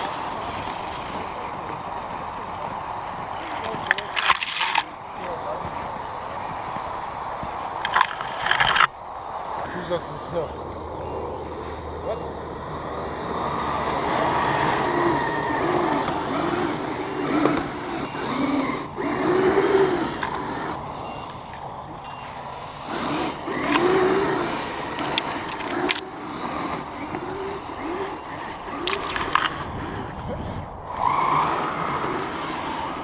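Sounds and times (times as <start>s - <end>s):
toy truck electric motors whining: 0.0s - 4.9s, 7.7s - 9.0s, 10.8s - 33.0s
sharp clicks: 28.7s - 29.6s.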